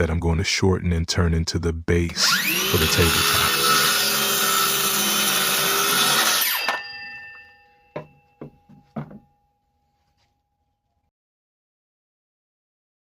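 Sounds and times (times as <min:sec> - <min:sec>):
power saw cutting wood: 0:02.2 - 0:06.8
wood knocks: 0:07.9 - 0:09.3.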